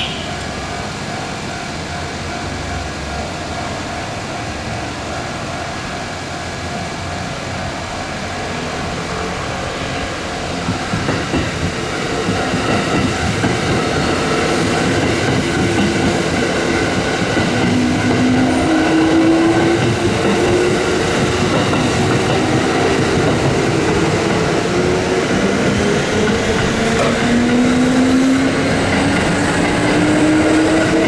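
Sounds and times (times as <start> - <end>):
electric train passing: 0.0 - 31.0
wheels clicking over rail joints: 10.4 - 31.0.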